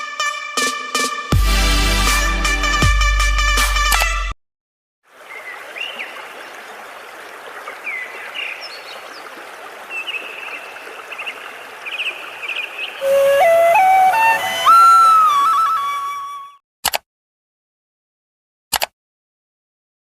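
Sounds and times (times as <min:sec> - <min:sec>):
running stream: 0:05.1 - 0:16.4
small birds chirping: 0:05.2 - 0:13.4
flute melody: 0:13.0 - 0:16.6.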